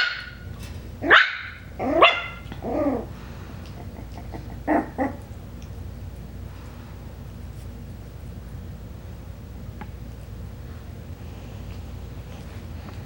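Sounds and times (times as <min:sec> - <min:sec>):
puppy barking in high yaps: 0:00.0 - 0:02.5.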